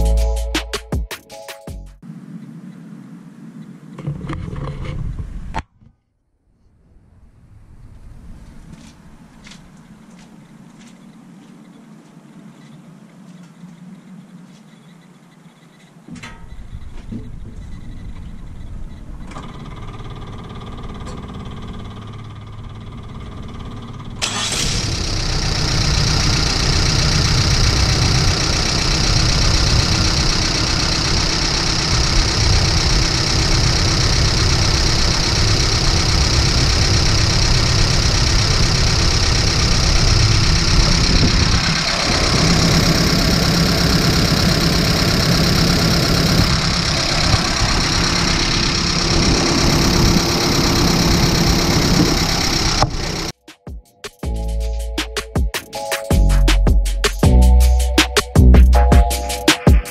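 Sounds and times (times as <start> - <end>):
engine starting and running: 17.1 - 53.4.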